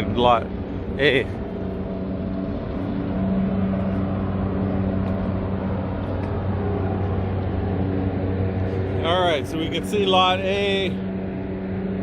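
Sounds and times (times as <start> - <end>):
road noise: 0.0 - 12.0
vehicle engine droning: 0.0 - 12.0.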